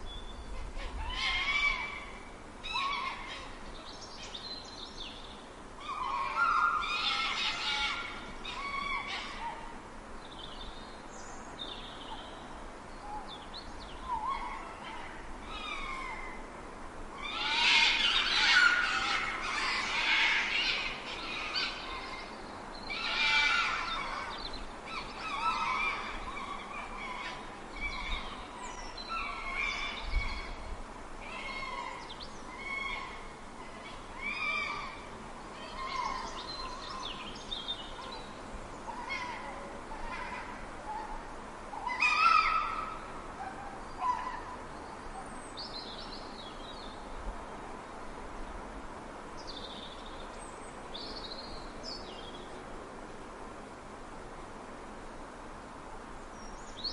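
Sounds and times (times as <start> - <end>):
fox yelping and whining: 41.8 - 44.4
steady hiss: 42.7 - 56.9.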